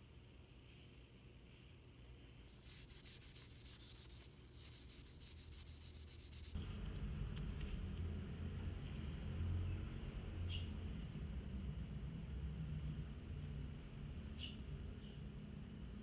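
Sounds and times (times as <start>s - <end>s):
rapid rubbing strokes: 2.5s - 6.6s.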